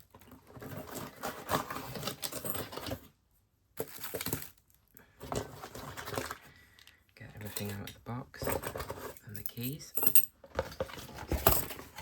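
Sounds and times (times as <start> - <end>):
packaging rustling: 0.0 - 3.1, 3.8 - 7.0.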